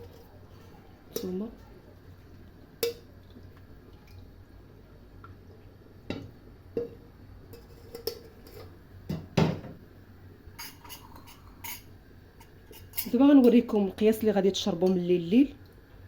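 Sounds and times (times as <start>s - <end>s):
pots and utensils clinking: 0.0s - 1.5s, 2.8s - 3.1s, 6.1s - 9.8s, 10.6s - 13.7s.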